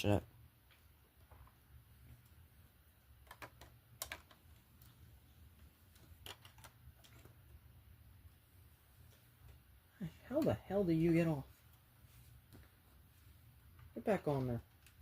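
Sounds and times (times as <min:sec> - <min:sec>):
plastic bricks clicking together: 0:03.2 - 0:04.4.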